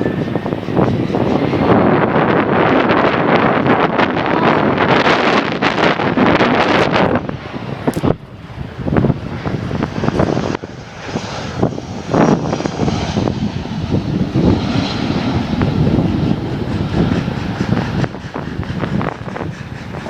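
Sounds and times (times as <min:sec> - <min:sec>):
jet engines rumbling: 0:00.0 - 0:20.0
wind buffeting microphone: 0:00.0 - 0:20.0.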